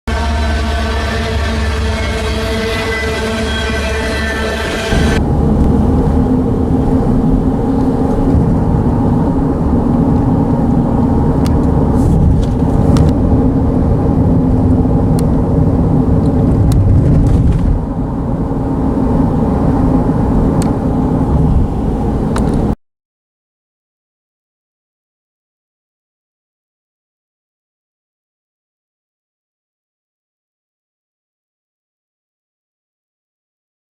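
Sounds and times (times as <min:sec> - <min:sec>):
humming drone: 0:00.1 - 0:22.8
low vehicle rumble: 0:00.1 - 0:22.8.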